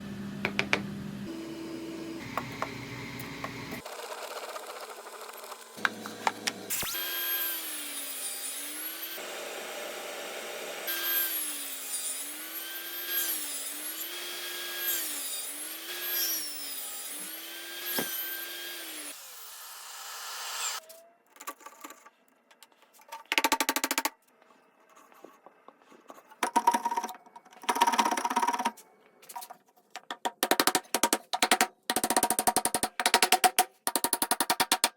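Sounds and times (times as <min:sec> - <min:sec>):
power saw cutting wood: 0:01.3 - 0:20.8.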